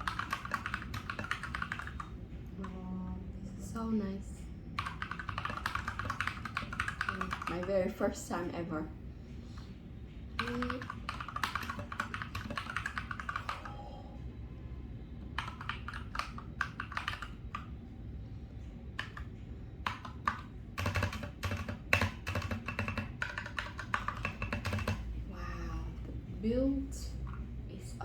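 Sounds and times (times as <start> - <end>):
mechanical keyboard typing: 0.0 - 2.8, 4.8 - 8.0, 10.4 - 13.8, 15.4 - 17.7, 19.0 - 25.1.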